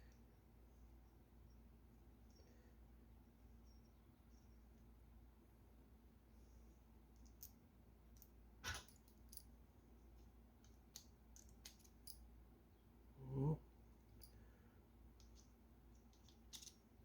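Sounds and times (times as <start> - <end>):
small metal parts clicking: 10.6 - 12.2, 15.2 - 16.8.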